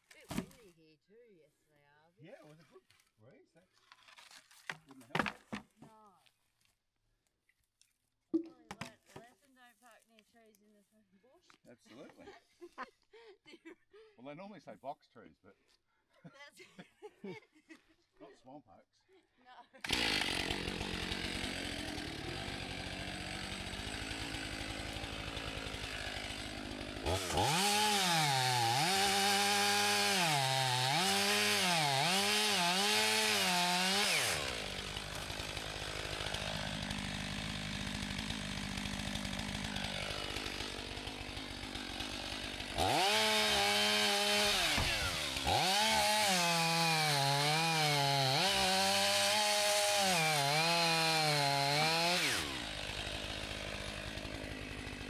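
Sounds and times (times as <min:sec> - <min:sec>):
chainsaw cutting wood: 0:00.0 - 0:00.7, 0:03.9 - 0:06.0, 0:08.7 - 0:09.3, 0:19.8 - 0:55.0.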